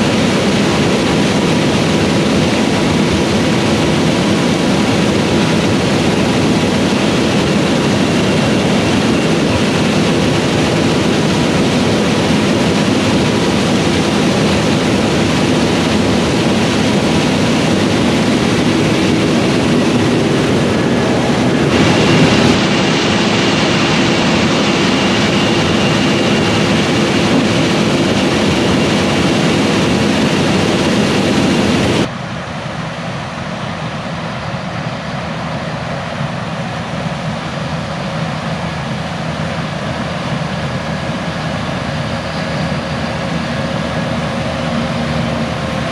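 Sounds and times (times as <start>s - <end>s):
combine harvester din: 0.0s - 32.1s
machine whining tones: 0.0s - 32.1s.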